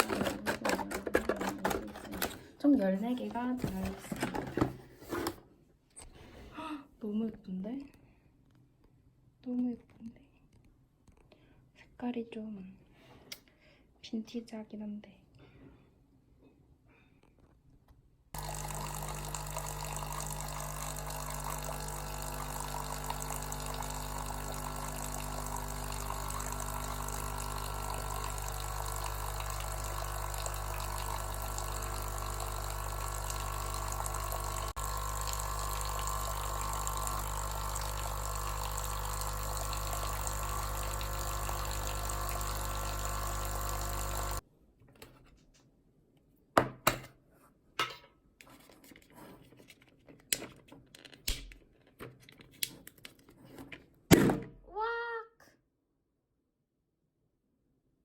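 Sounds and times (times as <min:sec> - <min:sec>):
espresso machine pump humming: 0:18.4 - 0:44.4.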